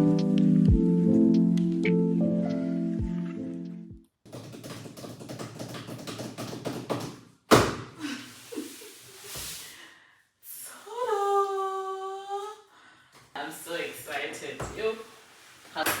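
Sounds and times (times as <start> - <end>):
rapid clicking and rattling: 4.3 - 7.1.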